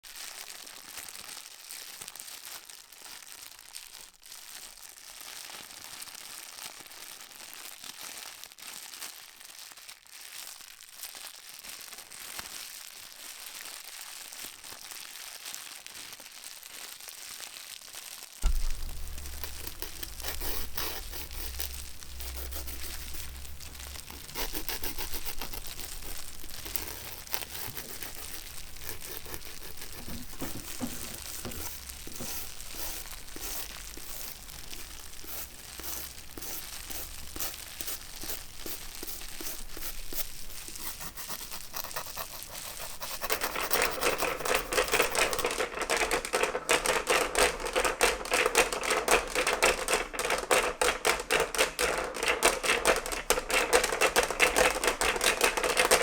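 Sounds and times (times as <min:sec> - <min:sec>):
rapid regular clacking: 0:18.4 - 0:40.8, 0:41.8 - 0:56.0
paper or plastic crinkling: 0:18.4 - 0:56.0.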